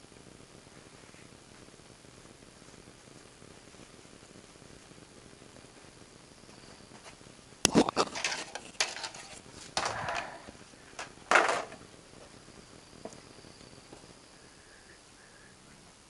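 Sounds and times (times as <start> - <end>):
sharp knocks and clattering: 8.1 - 10.3, 11.0 - 11.8.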